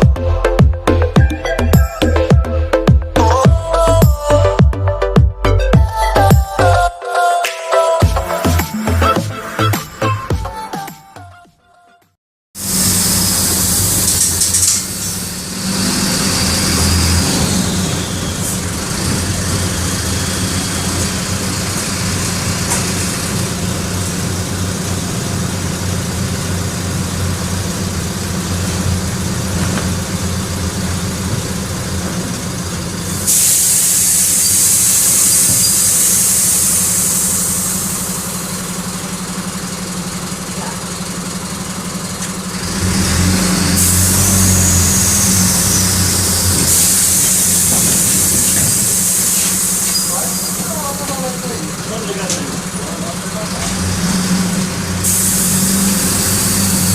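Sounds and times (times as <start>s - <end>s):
diesel bus engine running: 0.0s - 6.9s, 12.6s - 56.9s
air hiss: 12.6s - 18.7s, 33.1s - 38.9s, 43.6s - 51.6s, 55.0s - 56.9s.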